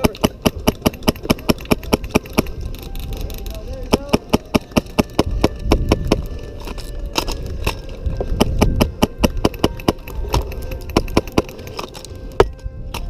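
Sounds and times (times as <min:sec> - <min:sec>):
airsoft guns firing: 0:00.0 - 0:02.6, 0:03.8 - 0:06.2, 0:08.4 - 0:11.6.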